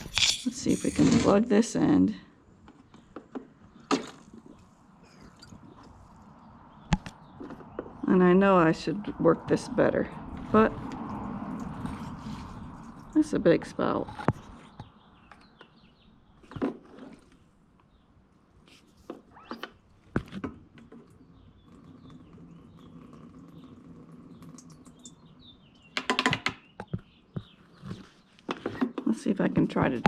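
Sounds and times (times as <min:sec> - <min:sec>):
gas cans knocking and clattering: 0:26.0 - 0:26.6.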